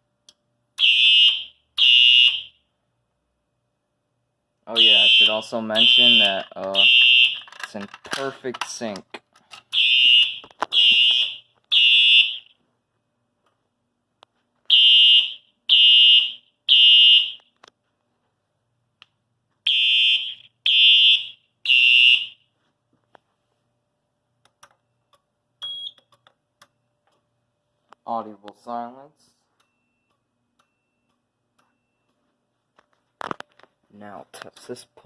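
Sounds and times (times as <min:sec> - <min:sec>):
fire alarm horns blasting: 0:00.8 - 0:02.7, 0:04.7 - 0:07.6, 0:09.7 - 0:12.6, 0:14.7 - 0:17.5, 0:19.6 - 0:22.5.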